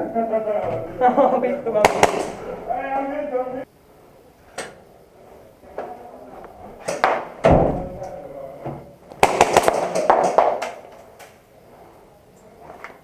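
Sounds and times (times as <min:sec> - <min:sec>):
sharp knocks and clatter: 0:09.4 - 0:10.8.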